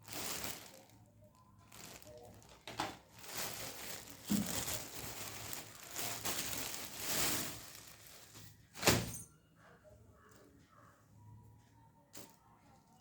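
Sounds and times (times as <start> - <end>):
packaging crinkling and rustling: 0.0 - 9.2.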